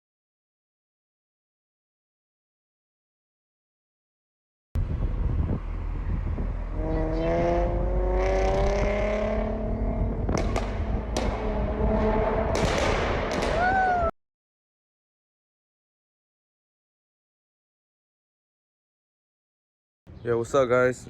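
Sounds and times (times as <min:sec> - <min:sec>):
car engine revving: 0:04.8 - 0:13.5
deep exhaust rumble: 0:04.8 - 0:13.5
exhaust pops and cracks: 0:10.2 - 0:11.5, 0:12.5 - 0:13.7.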